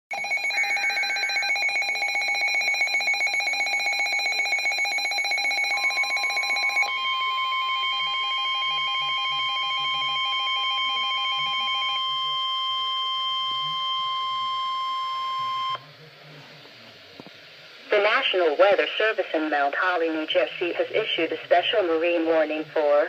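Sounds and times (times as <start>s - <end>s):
long steady alarm tone: 0.1s - 15.8s
warbling electronic alarm tones: 0.1s - 15.8s.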